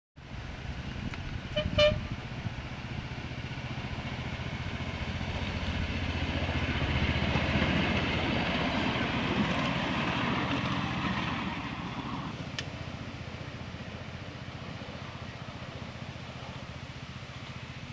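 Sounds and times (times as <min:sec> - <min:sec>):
train engine passing: 0:00.2 - 0:17.9
train horn toots: 0:01.5 - 0:02.3.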